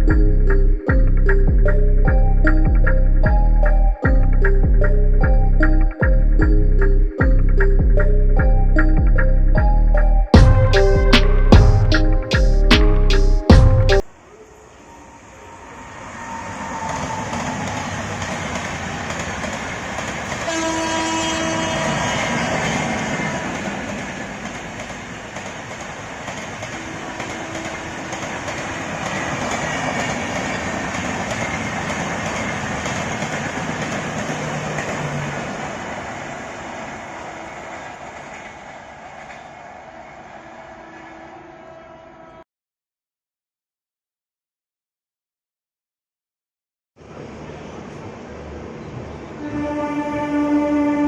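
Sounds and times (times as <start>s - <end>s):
locomotive horn: 10.4s - 13.8s, 20.4s - 23.4s, 26.7s - 29.0s, 40.4s - 42.4s, 49.4s - 51.0s
train rumble and rattle: 16.6s - 40.1s.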